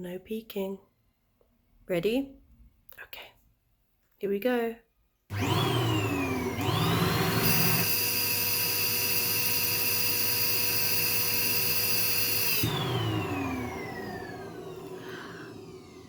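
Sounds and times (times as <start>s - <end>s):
vacuum cleaner motor whining: 5.3s - 16.0s.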